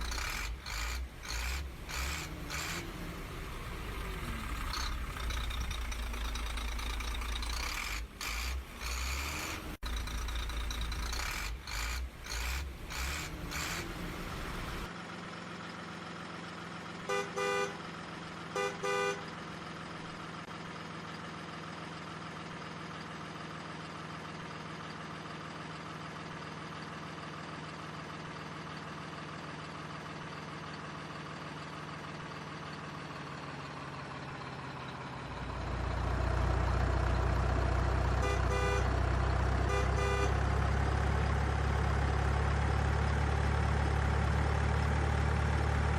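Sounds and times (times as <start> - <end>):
heavy vehicle engine running: 0.0 - 45.9
short horn toots: 38.2 - 39.0, 39.7 - 40.4.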